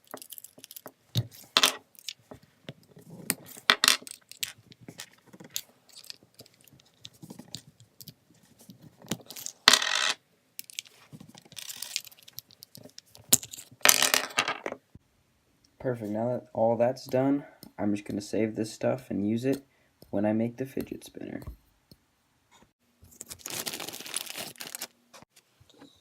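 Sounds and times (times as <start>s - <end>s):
small metal parts clicking: 0.0s - 0.9s, 5.4s - 6.6s, 11.5s - 13.7s.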